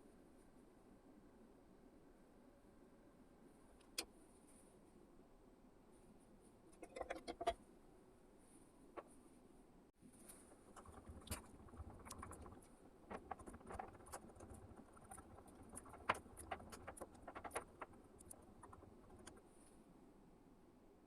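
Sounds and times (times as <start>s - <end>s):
small hard objects clicking: 10.7s - 19.4s.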